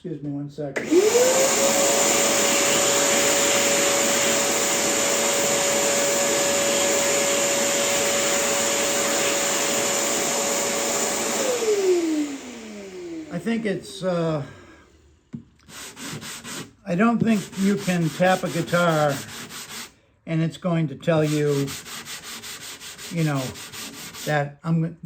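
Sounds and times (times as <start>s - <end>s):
shop vacuum motor whining: 0.8s - 15.4s.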